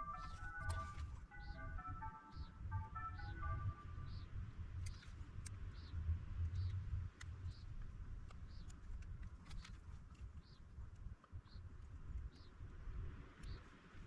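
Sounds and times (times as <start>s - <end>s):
soft high chirp: 0.0s - 4.3s.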